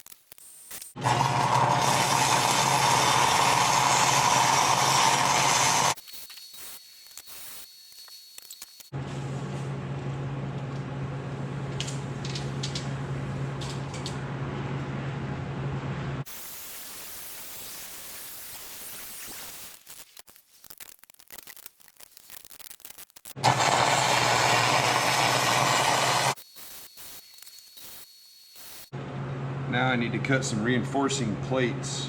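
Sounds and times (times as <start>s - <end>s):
arc welding crackling hiss: 5.2s - 8.9s, 16.3s - 23.4s, 25.4s - 28.9s.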